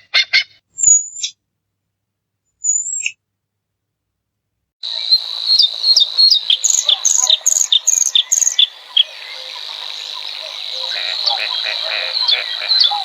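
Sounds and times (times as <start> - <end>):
songbird calling sharp notes: 0.0 - 1.4, 4.8 - 13.0
high insect drone: 4.8 - 13.0.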